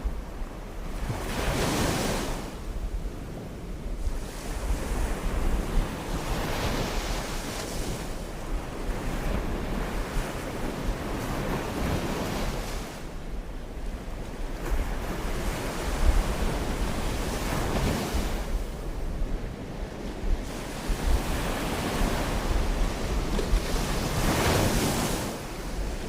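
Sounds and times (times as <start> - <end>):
wind buffeting microphone: 0.0 - 26.0
sea waves breaking: 20.4 - 26.0.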